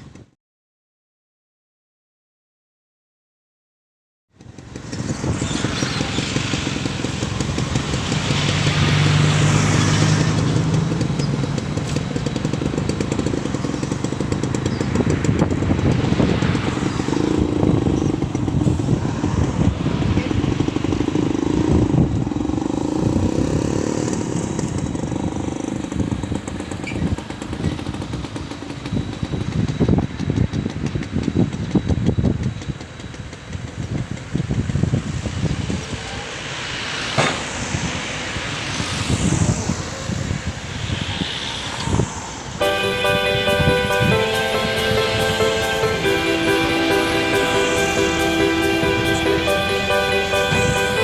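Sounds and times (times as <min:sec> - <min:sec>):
excavator diesel engine under load: 0:04.3 - 0:35.0, 0:41.9 - 0:51.0.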